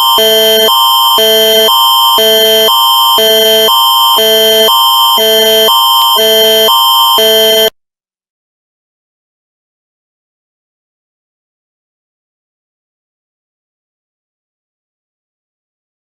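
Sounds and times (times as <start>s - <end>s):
electronic alert tone alternating chords: 0.0s - 7.7s.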